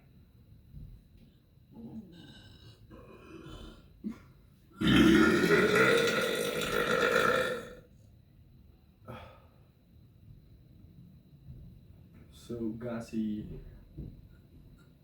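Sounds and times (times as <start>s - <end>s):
person burping: 2.0s - 7.8s.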